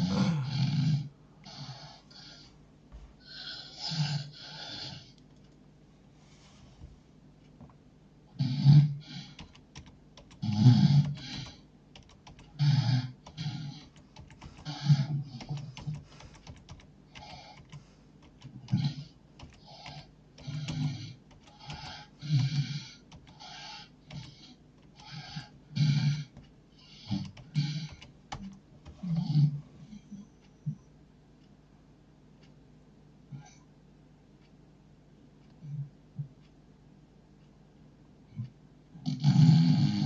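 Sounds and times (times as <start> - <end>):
man snoring heavily: 0.0 - 2.0, 3.3 - 5.1, 10.4 - 11.5, 12.6 - 13.8, 14.6 - 15.4, 39.0 - 40.0
faint clicks: 5.2 - 5.7.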